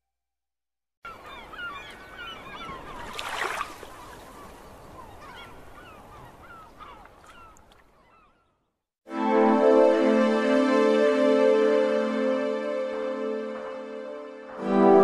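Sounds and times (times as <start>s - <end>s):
birds honking and squawking: 1.1s - 3.2s.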